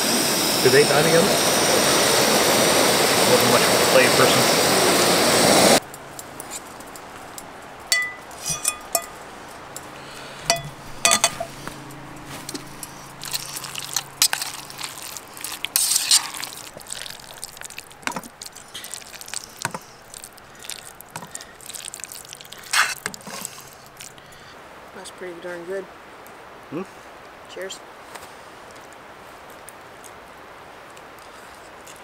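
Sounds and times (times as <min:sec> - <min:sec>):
utensils clinking on metal cookware: 0:07.9 - 0:09.8, 0:10.4 - 0:11.6.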